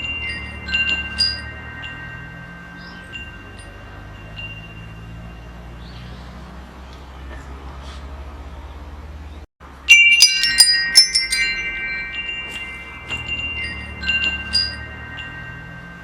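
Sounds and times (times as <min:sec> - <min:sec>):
metal wind chimes ringing: 0:00.0 - 0:06.8, 0:09.6 - 0:16.0.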